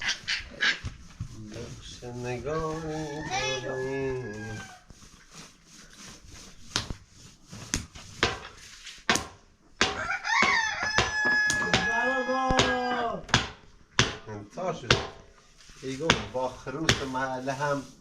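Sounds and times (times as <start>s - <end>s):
rooster crowing: 2.8s - 4.9s, 10.0s - 12.6s
sharp knocks: 9.1s - 14.3s, 14.9s - 15.3s, 16.0s - 17.2s.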